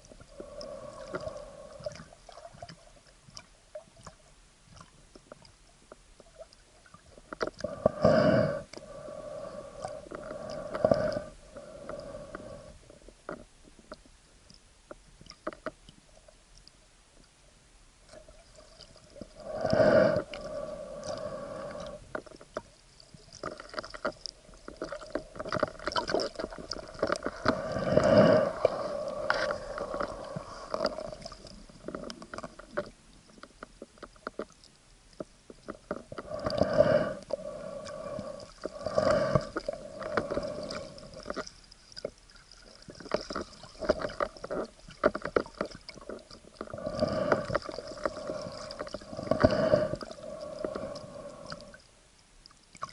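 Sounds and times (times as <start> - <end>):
underwater sloshing and bubbling: 0.0 - 52.9
water surges: 18.1 - 33.5
steady hum: 19.0 - 33.3.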